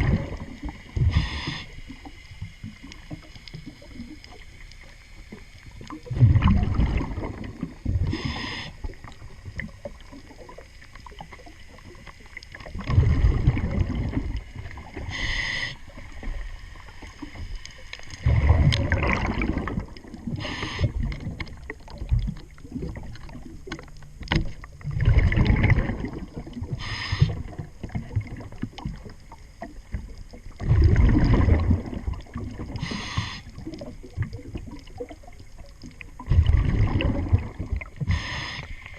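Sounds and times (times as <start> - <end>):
exhaled bubbles underwater: 0.0 - 38.9
regulator hiss: 1.1 - 1.9, 8.1 - 9.0, 15.0 - 16.1, 20.4 - 21.0, 26.8 - 27.5, 32.8 - 33.6, 38.1 - 38.9.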